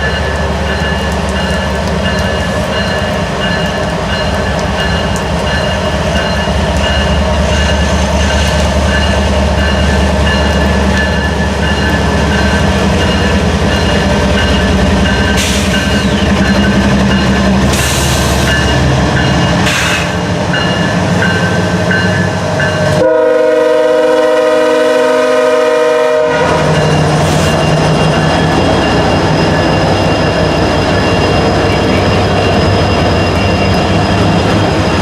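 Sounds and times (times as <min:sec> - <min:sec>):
freight train passing: 0:00.0 - 0:35.0
locomotive horn blast: 0:22.9 - 0:26.8.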